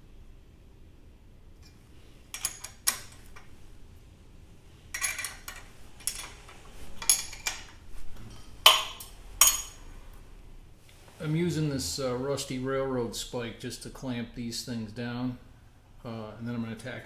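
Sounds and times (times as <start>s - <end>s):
metallic clinks on steel: 8.7s - 9.9s.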